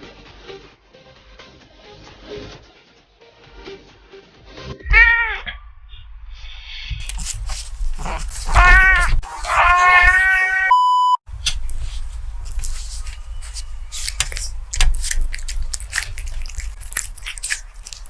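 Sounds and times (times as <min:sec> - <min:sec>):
cat meowing: 0:04.8 - 0:05.6, 0:08.0 - 0:10.8
short electronic beep: 0:10.7 - 0:11.2.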